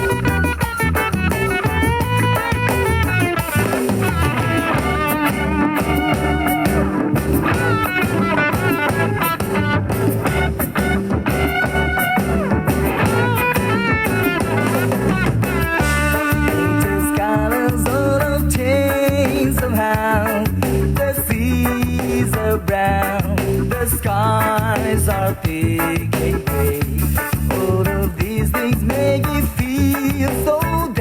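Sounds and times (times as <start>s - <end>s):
instrumental guitar bass and drums: 0.0s - 31.0s.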